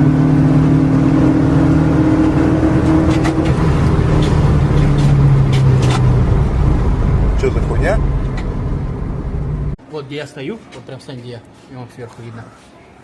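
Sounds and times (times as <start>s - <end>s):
petrol engine at high revs: 0.0s - 9.8s.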